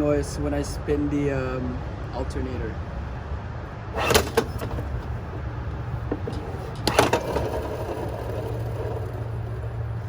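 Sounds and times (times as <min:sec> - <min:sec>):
alternator low rough growl: 0:03.9 - 0:10.0
loud rattling bursts: 0:04.0 - 0:10.0.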